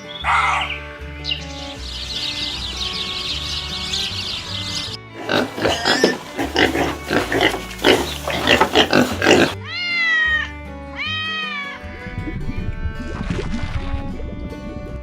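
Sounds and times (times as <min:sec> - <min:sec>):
background music: 0:00.0 - 0:15.0
rough animal calls: 0:00.2 - 0:00.9, 0:04.0 - 0:09.6.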